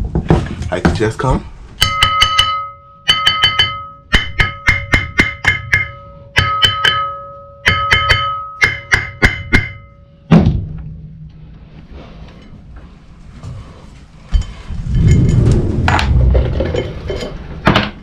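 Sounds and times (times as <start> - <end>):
metal striking metal: 1.8 - 11.5, 14.3 - 17.8
heavy thud: 10.3 - 11.9, 14.4 - 16.9.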